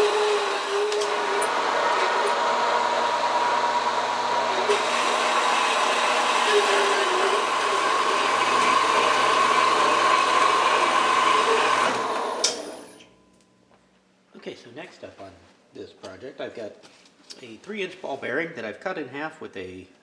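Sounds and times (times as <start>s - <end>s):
power tool whining: 0.0s - 13.0s.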